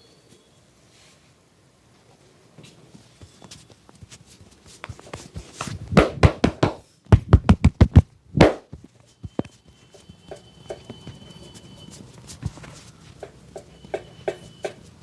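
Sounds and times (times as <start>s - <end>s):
hands slapping in massage: 4.7s - 8.7s.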